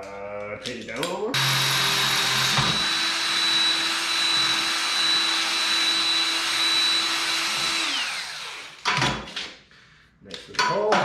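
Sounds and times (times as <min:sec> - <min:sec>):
electric drill boring through metal: 0:01.4 - 0:08.9.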